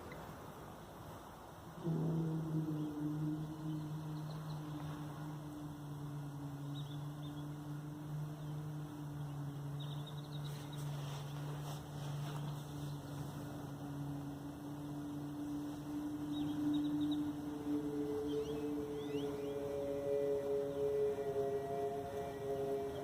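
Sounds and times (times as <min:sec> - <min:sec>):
low droning hum: 0:00.0 - 0:23.0
faint bird chirps: 0:02.7 - 0:23.0
short rustle: 0:10.4 - 0:13.8.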